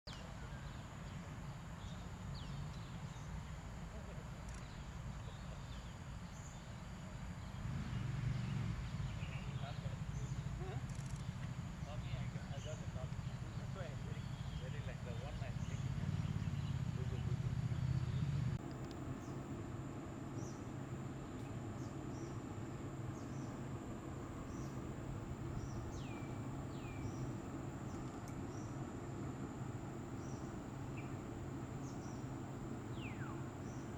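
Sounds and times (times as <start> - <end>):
low background hum: 0.1 - 33.9
steady low rumble: 8.7 - 33.9
high bird calls: 24.4 - 28.7, 30.1 - 33.9.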